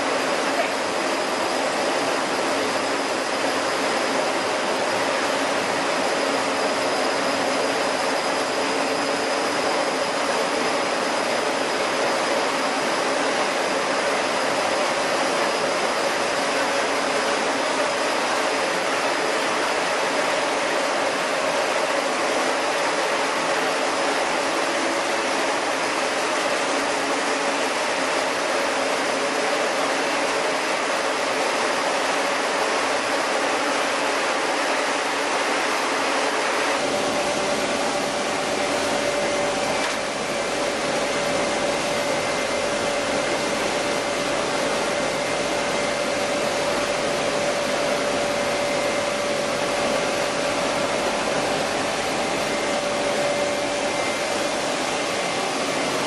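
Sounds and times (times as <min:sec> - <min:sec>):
high mechanical whine: 0:00.0 - 0:56.0
milling machinery running: 0:00.0 - 0:56.0.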